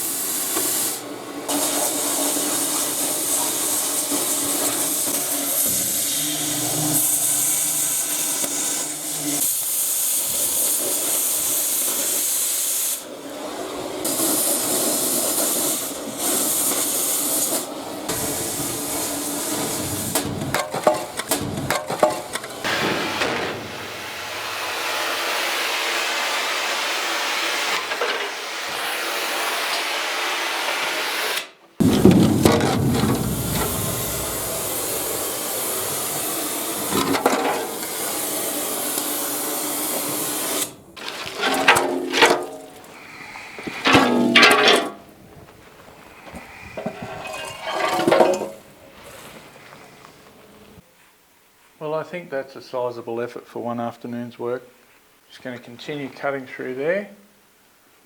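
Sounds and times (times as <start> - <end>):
cutting torch hissing: 0.0 - 20.6, 22.6 - 27.7, 31.8 - 41.1.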